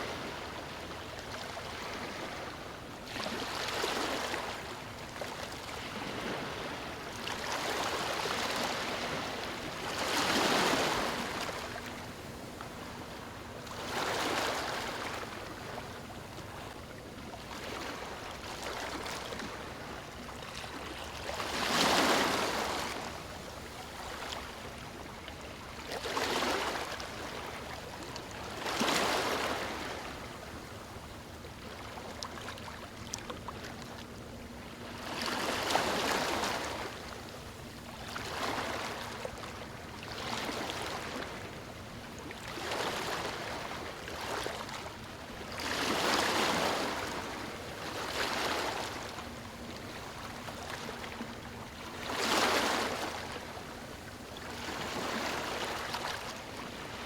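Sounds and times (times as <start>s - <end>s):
waves breaking on stony shore: 5.8s - 11.9s, 45.6s - 49.0s, 51.9s - 53.4s.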